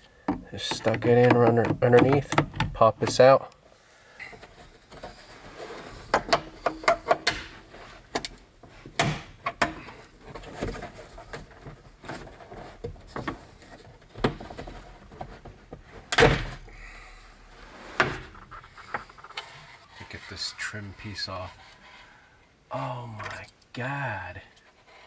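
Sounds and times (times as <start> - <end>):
plastic trim clicking and knocking: 0.3 - 3.3, 6.1 - 8.4.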